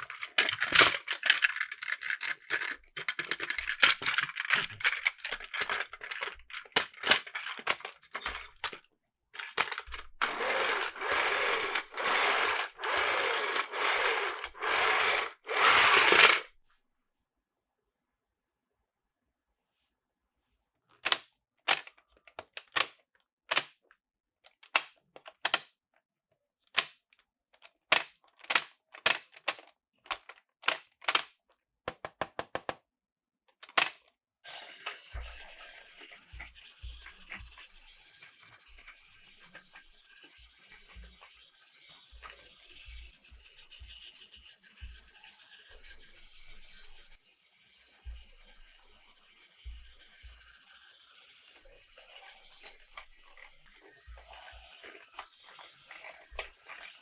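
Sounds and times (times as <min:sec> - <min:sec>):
plastic clicks and snaps: 0:00.0 - 0:08.8, 0:09.4 - 0:16.4, 0:21.0 - 0:23.7, 0:24.5 - 0:25.7, 0:27.6 - 0:31.3, 0:33.6 - 0:34.1
toy train rattling on track: 0:00.0 - 0:08.8, 0:09.4 - 0:16.5, 0:21.0 - 0:22.9, 0:27.9 - 0:31.3, 0:34.6 - 0:57.0.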